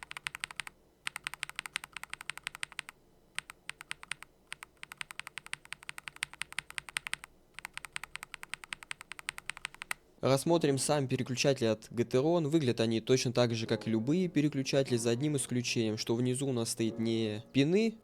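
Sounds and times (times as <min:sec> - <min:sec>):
mechanical keyboard typing: 0:00.0 - 0:10.0.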